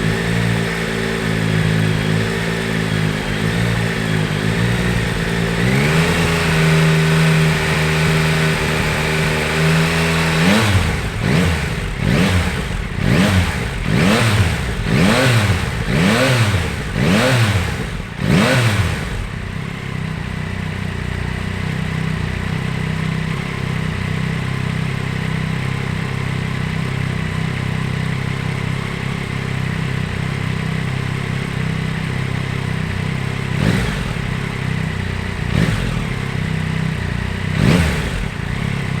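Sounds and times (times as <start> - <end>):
motorcycle engine revving and idling: 0.0 - 39.0.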